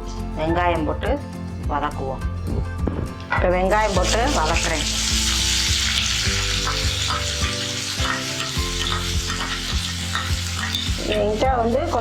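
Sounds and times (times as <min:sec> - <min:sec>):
onions sizzling in hot oil: 0:03.7 - 0:12.0
spoon scraping a pan: 0:05.0 - 0:11.4.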